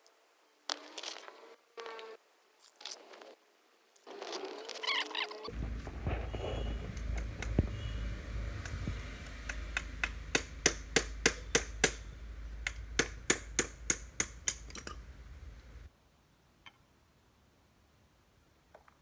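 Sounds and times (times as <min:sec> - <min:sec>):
low workshop hum: 0:05.5 - 0:15.9
metal taps on a pin: 0:12.6 - 0:15.8.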